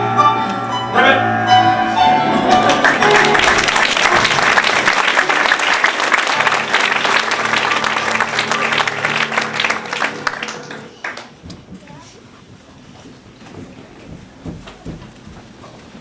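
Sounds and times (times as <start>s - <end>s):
soft held chord: 0.0s - 5.5s, 6.2s - 11.0s
audience applauding: 2.4s - 11.4s.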